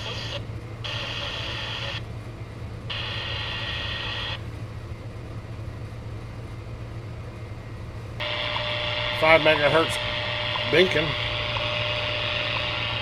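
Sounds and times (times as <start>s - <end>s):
radio static hiss: 0.0s - 2.0s, 2.9s - 4.4s, 8.2s - 13.0s
low hum: 2.0s - 13.0s.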